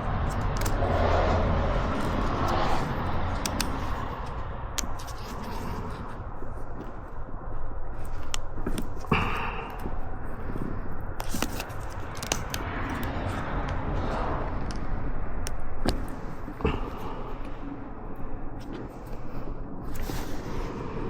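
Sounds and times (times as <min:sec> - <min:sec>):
steady low hum: 0:00.0 - 0:21.0
metal tools clicking and tapping: 0:03.3 - 0:05.4.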